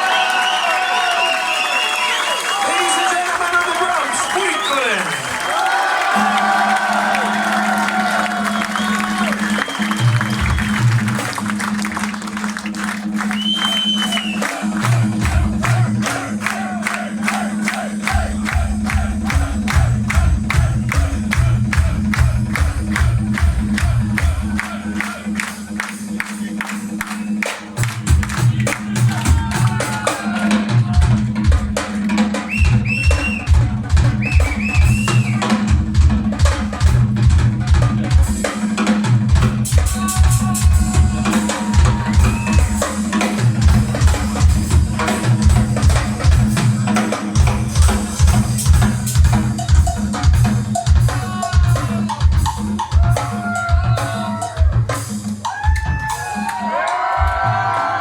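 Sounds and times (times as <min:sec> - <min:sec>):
live band playing: 0:06.1 - 0:57.7
rapid kick drum strokes: 0:17.3 - 0:25.7, 0:27.8 - 0:56.0.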